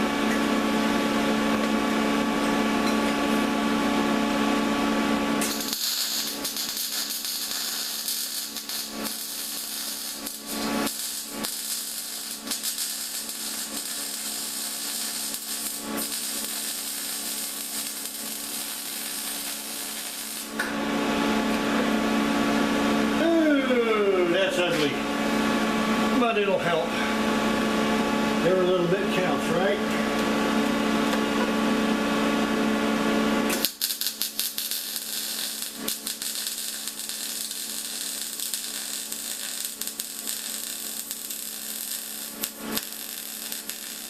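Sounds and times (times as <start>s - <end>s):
steady machine hum: 0.0s - 44.0s
welding arc crackling: 5.3s - 21.8s, 33.5s - 44.0s.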